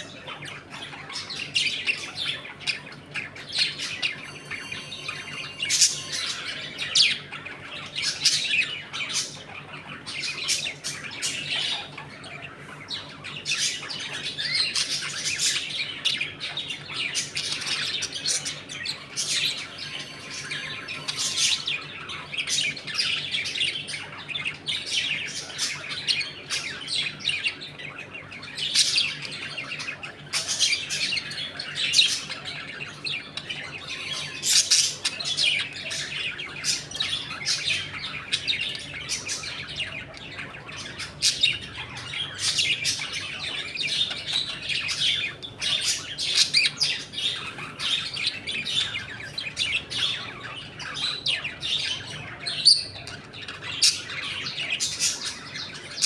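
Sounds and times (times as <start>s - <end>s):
budgerigars chattering: 0.0s - 56.0s.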